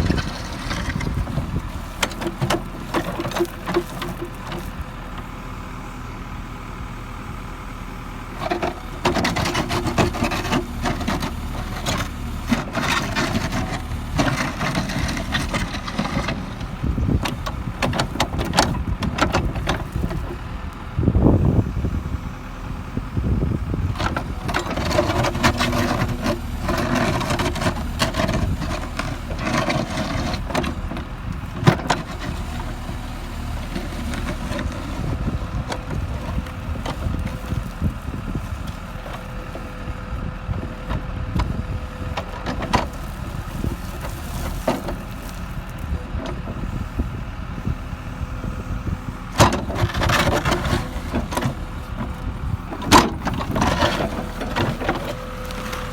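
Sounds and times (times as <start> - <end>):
diesel engine whining: 0.0 - 55.9
grinding and crunching: 0.0 - 55.9
bucket scraping concrete: 52.8 - 55.9.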